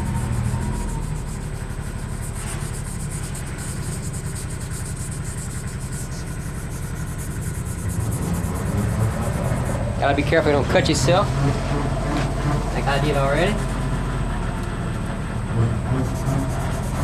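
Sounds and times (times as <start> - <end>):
sandpaper rubbing sword blade: 0.0 - 9.8, 15.9 - 17.0
steady low hum: 0.0 - 17.0.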